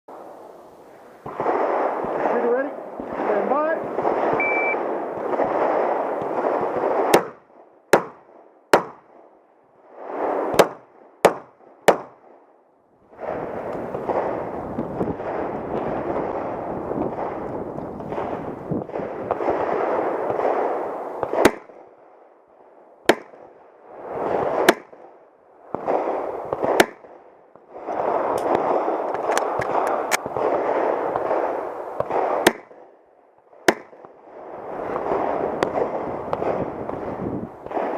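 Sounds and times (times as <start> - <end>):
pistol shots: 1.2 - 9.2, 10.2 - 12.4, 13.3 - 21.9, 23.0 - 23.6, 24.2 - 25.1, 25.7 - 27.2, 27.9 - 32.9, 33.6 - 34.2, 34.8 - 37.9.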